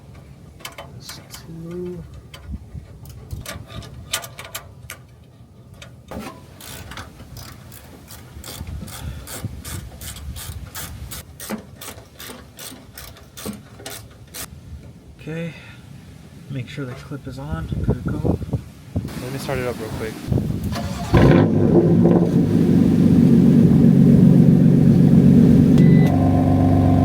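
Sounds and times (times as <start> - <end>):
ratchet wrench clicking: 6.6 - 14.5.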